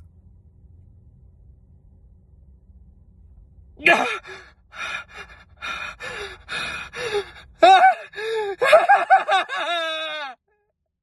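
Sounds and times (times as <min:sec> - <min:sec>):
man gasping: 0:03.8 - 0:08.6.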